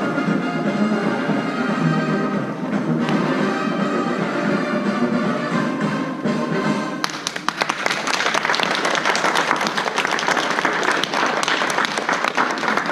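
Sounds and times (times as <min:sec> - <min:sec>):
orchestral music: 0:00.0 - 0:07.4
audience applause: 0:07.0 - 0:12.9.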